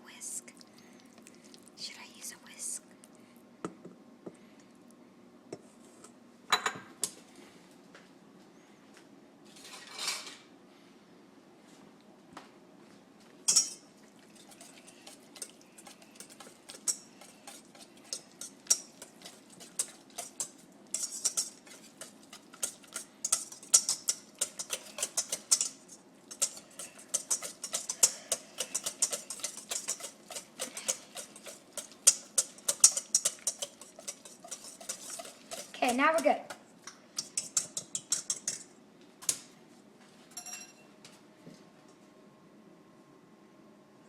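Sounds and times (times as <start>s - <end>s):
utensil beating in a bowl: 13.5s - 39.4s.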